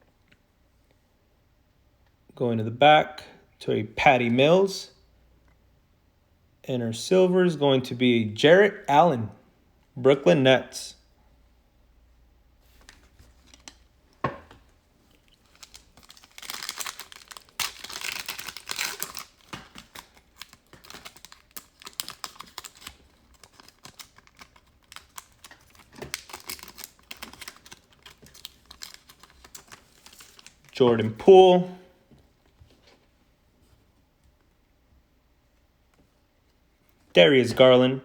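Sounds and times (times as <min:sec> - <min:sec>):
foil wrapper crinkling and tearing: 0:12.8 - 0:13.8, 0:15.1 - 0:30.8
cards clicking and rustling: 0:15.2 - 0:30.7.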